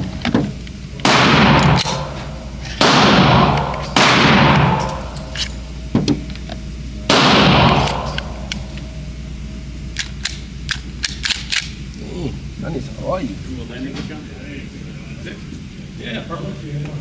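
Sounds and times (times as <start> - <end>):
pistol shots echoing: 1.0 - 6.0, 7.1 - 9.0.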